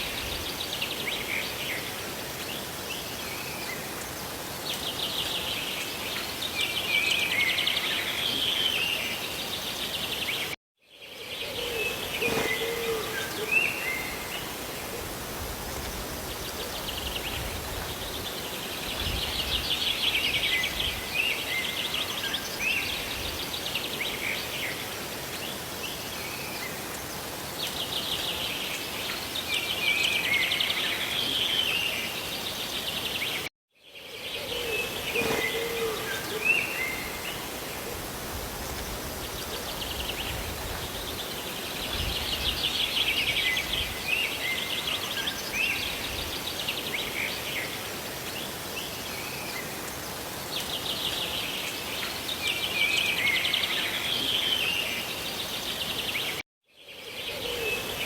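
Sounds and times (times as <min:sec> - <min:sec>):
small birds singing: 0:15.6 - 0:37.9, 0:38.5 - 0:58.0
rushing falling water: 0:34.9 - 0:56.4.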